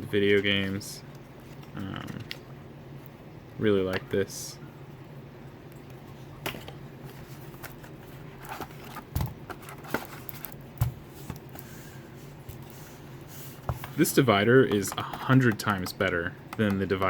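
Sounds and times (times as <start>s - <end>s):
low steady hum: 0.0s - 17.0s
paper and cardboard rustling: 7.0s - 15.6s.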